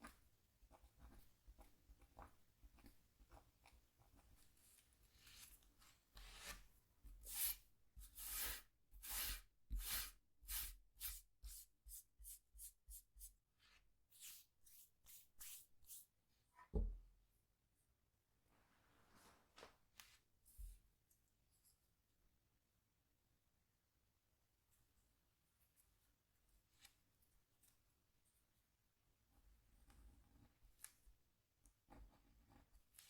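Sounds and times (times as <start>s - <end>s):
tool scraping a scratchboard: 7.2s - 11.6s.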